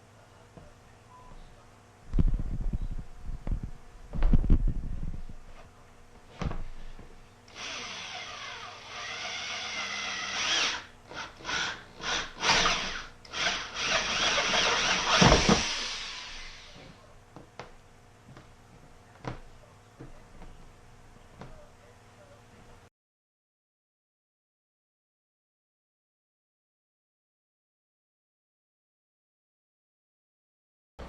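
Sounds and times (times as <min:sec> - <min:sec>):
power drill boring: 0:07.5 - 0:16.9.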